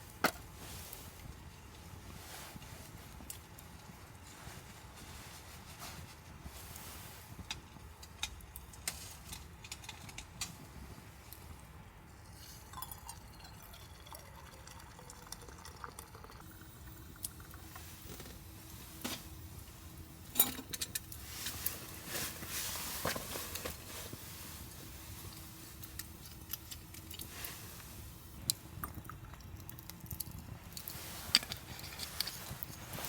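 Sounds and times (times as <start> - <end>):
liquid pouring: 12.6 - 18.1.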